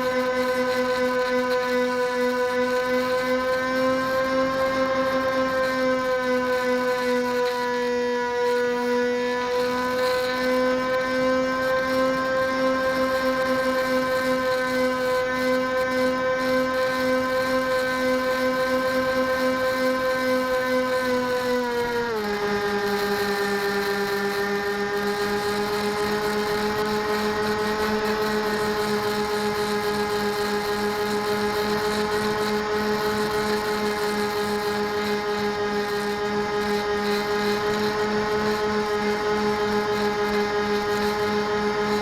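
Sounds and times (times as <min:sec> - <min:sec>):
model airplane motor whine: 0:00.0 - 0:42.0.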